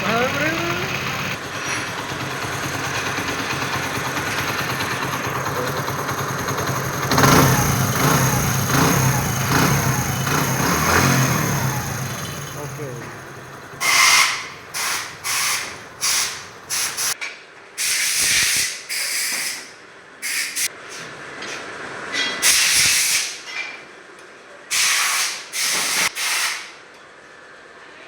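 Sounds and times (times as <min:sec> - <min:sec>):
motorcycle engine running: 0:00.0 - 0:17.2
hissing bursts of pressurised gas: 0:13.8 - 0:17.2, 0:24.7 - 0:26.7.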